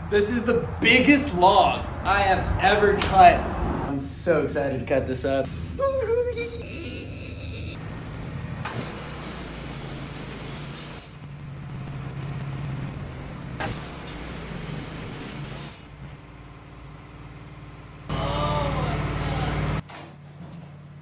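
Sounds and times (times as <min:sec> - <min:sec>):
sawmill engine hum: 0:05.4 - 0:19.8
saw hissing through wood: 0:08.7 - 0:11.3, 0:12.3 - 0:15.9.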